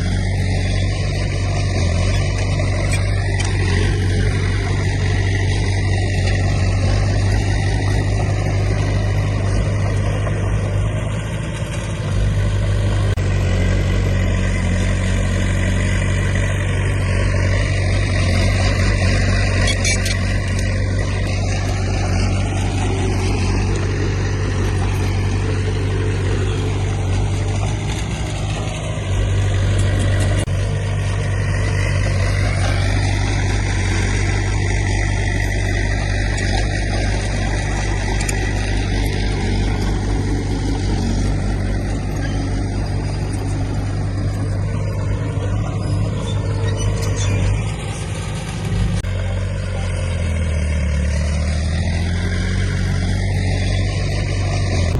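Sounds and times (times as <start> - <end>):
diesel engine droning: 0.0 - 54.9
machinery clatter: 0.0 - 54.9.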